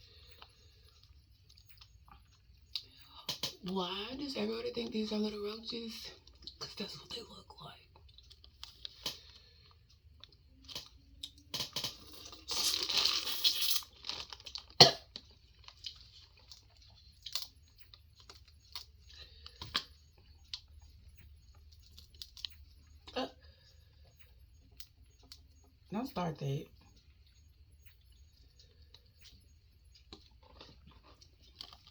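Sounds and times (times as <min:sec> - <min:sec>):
chewing: 0:00.0 - 0:31.9
food crunching: 0:00.0 - 0:31.9
mouth clicks and smacks: 0:00.2 - 0:03.7, 0:08.0 - 0:14.2, 0:14.8 - 0:25.8.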